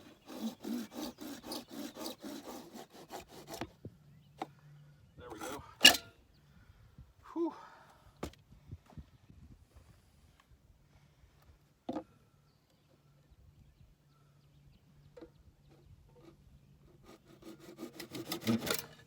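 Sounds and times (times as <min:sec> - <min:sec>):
hand saw cutting plastic pipe: 0:00.0 - 0:03.8, 0:16.1 - 0:19.0.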